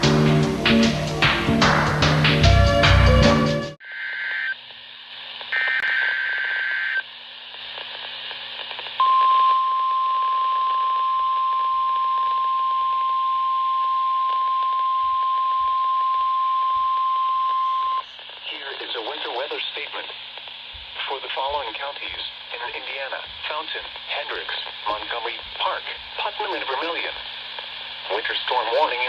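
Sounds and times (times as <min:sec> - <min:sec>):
radio hiss: 0:03.8 - 0:09.0, 0:17.4 - 0:29.0
data tone bursts: 0:09.0 - 0:18.2.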